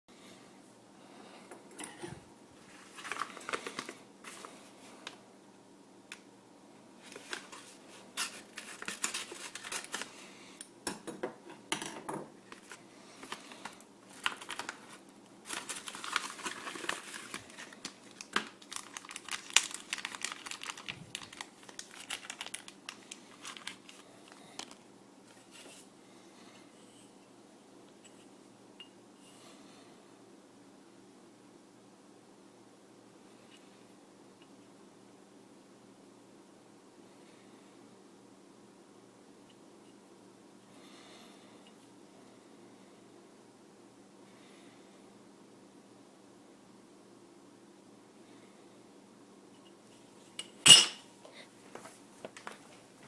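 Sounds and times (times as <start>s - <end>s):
packaging crinkling and tearing: 2.7s - 4.6s, 7.0s - 10.2s, 12.5s - 24.8s.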